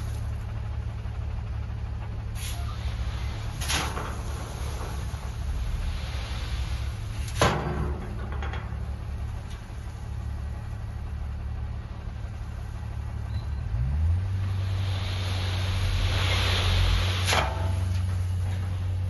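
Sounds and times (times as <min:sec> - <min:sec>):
engine running and revving: 0:12.2 - 0:19.0.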